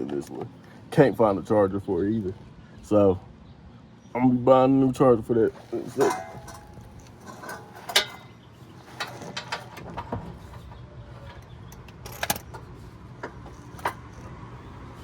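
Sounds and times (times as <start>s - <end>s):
hand tools clicking on metal: 5.5s - 9.8s.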